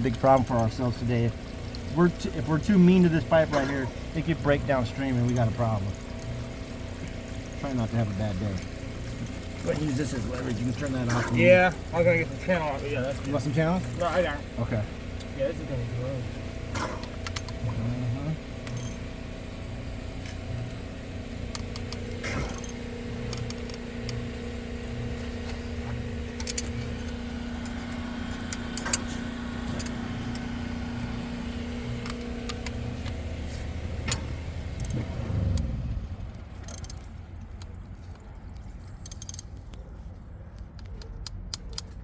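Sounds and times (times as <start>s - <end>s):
pump engine running: 0.0s - 39.5s
wrenches clinking on bolts: 18.6s - 19.1s, 21.5s - 23.8s, 38.9s - 39.6s.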